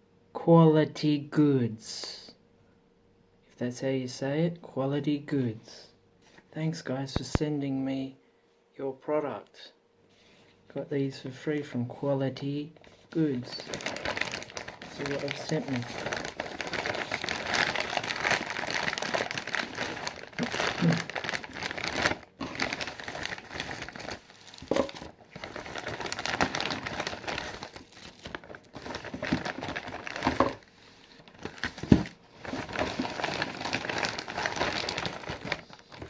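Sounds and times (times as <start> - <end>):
packaging crinkling and rustling: 12.8 - 36.0.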